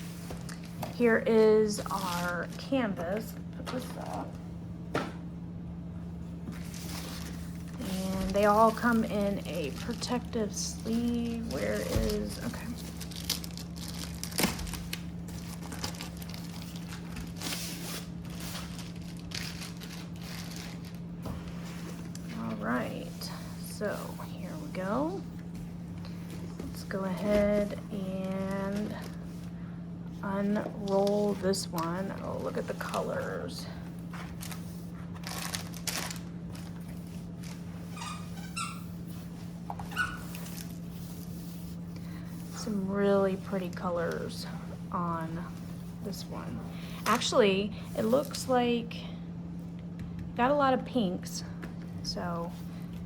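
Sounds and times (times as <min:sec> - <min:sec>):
steady low hum: 0:00.0 - 0:53.0
plastic sleeve crinkling: 0:06.6 - 0:23.1, 0:33.9 - 0:39.3
short high squeaks: 0:37.9 - 0:38.9.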